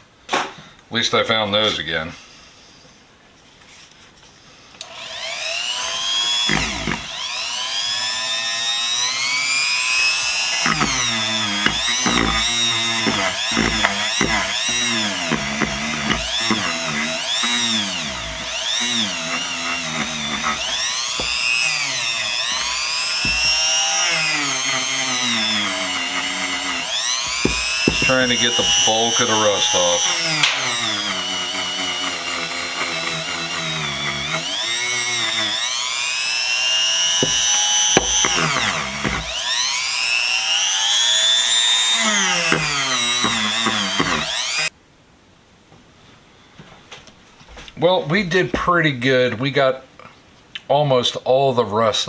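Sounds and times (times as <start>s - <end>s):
power drill with wire brush: 4.8s - 44.7s.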